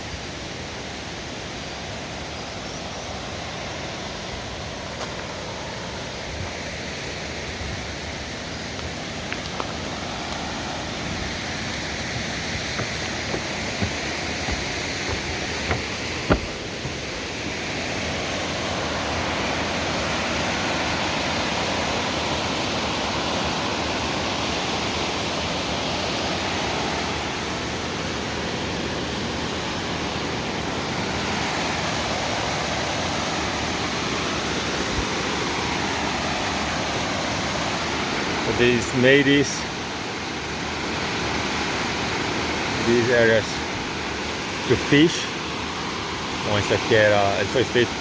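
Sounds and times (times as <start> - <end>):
flowing river water: 0.0 - 48.0
sharp knock: 12.8 - 17.0.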